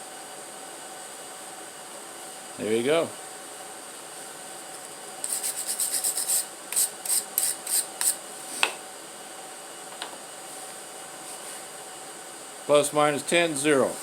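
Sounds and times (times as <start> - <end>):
hand scrubbing rasping strokes: 5.2 - 8.2.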